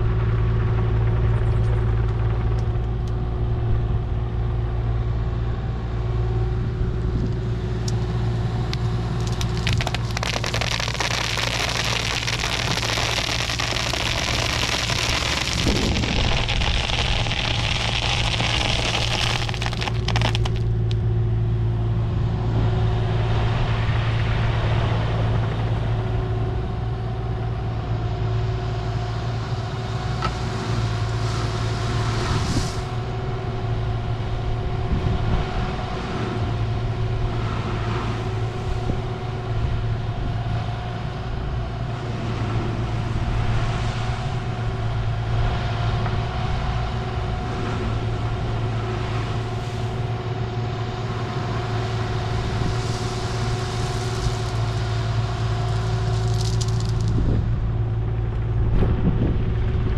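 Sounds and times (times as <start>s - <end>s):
diesel engine running: 0.0s - 59.9s
hissing noise: 9.2s - 20.9s, 52.4s - 57.2s.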